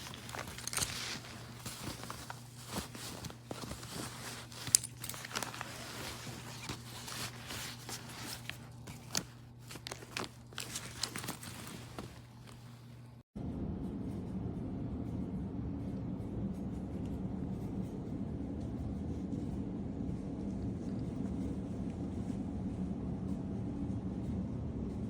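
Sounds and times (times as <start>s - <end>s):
backpack rustling and crinkling: 0.0s - 13.2s
steady low hum: 0.0s - 25.0s
steady low rumble: 13.4s - 25.0s.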